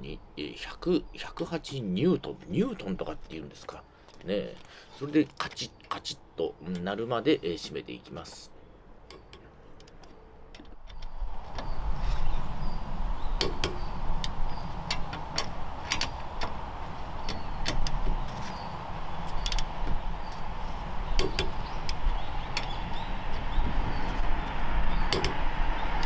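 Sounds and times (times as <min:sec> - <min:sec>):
torque wrench clicking: 0:13.4 - 0:16.6, 0:17.2 - 0:23.5, 0:24.4 - 0:26.0.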